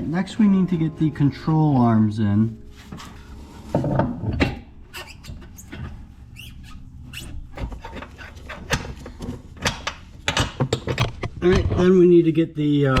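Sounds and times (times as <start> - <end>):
wavering squeak: 4.8 - 8.5
hand tools clicking and knocking: 7.5 - 12.0.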